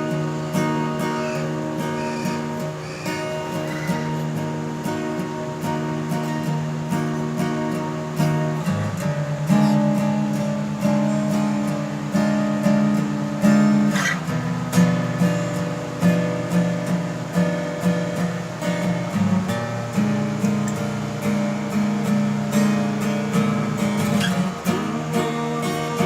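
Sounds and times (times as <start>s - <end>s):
acoustic guitar strumming chords: 0.0s - 26.0s
guitar string scrape: 13.9s - 14.3s, 23.9s - 26.0s.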